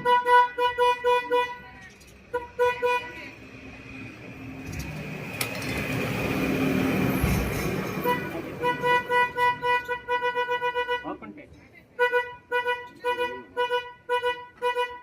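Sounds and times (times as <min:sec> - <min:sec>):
motor vehicle passing: 0:00.9 - 0:10.2.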